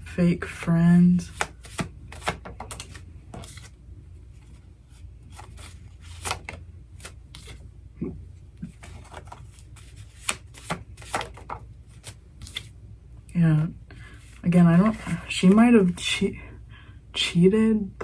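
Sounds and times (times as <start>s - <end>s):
steady low hum: 0.0s - 18.0s
cards being shuffled: 1.2s - 3.8s, 4.4s - 7.6s, 8.6s - 12.7s, 14.1s - 16.0s.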